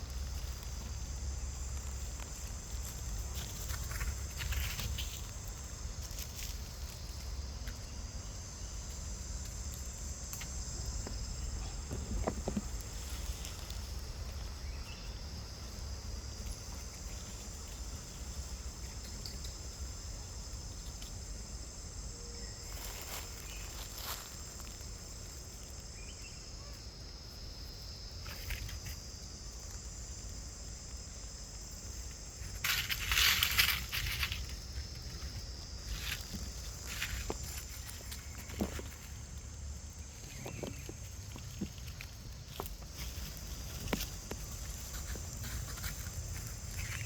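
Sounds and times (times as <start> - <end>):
insect chorus: 0.0 - 47.0.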